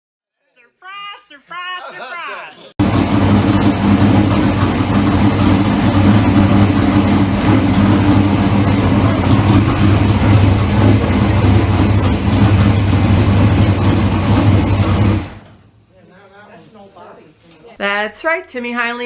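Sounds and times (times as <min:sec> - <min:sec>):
race car engine idling: 0:02.8 - 0:15.6.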